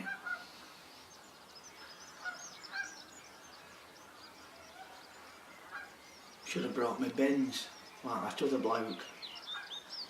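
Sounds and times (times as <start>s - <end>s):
waterfowl honking: 0.0s - 0.5s, 2.2s - 3.0s, 4.5s - 6.0s
small birds twittering: 0.0s - 10.0s.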